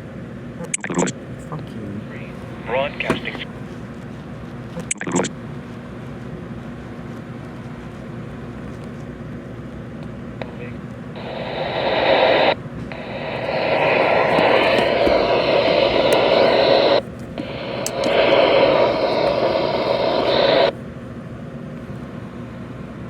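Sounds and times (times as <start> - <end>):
radio static hiss: 0.6 - 3.7, 4.7 - 5.4, 10.4 - 20.7.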